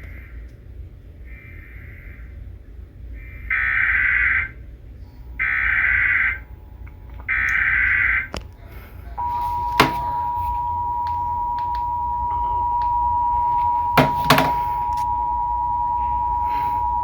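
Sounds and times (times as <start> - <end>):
two-tone attention signal: 9.2 - 17.0.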